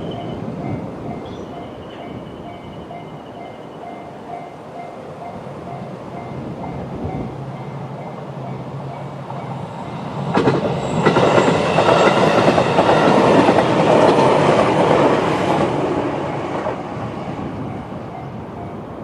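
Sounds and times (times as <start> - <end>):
faint crossing alarm tone: 0.0 - 10.0
train wheels clattering over rail joints: 10.2 - 15.6.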